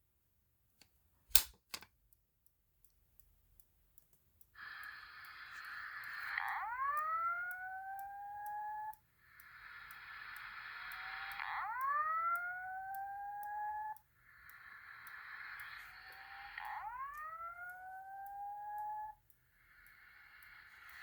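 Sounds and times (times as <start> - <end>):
alarm pull station clicks: 1.3 - 1.9.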